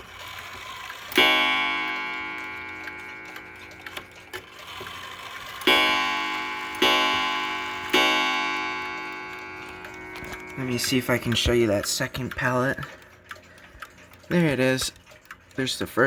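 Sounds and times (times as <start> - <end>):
clock ticking softly: 0.0 - 16.0
hammer striking clock gong: 1.1 - 11.7.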